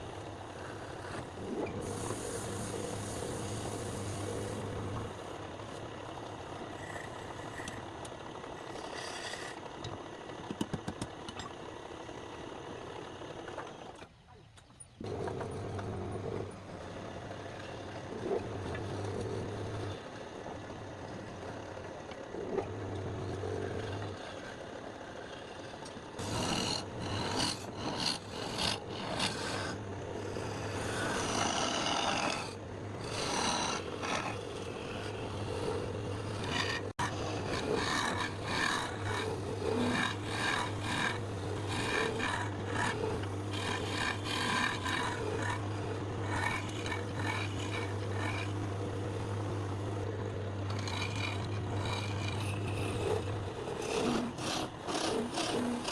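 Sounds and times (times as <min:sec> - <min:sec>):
low motor hum: 0:00.0 - 0:55.9
tool rasping on wood: 0:00.6 - 0:05.8, 0:08.6 - 0:09.6, 0:25.3 - 0:55.9.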